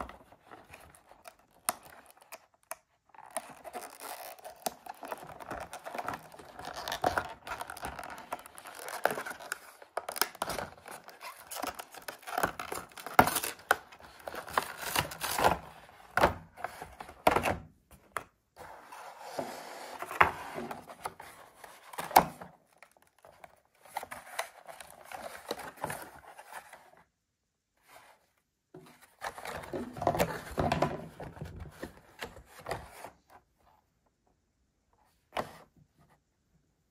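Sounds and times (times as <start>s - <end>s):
plastic packaging crinkling and tearing: 0.7s - 15.7s.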